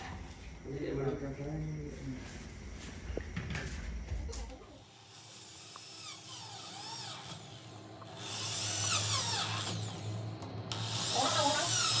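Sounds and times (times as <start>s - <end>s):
handheld power tool whining: 4.9s - 12.0s.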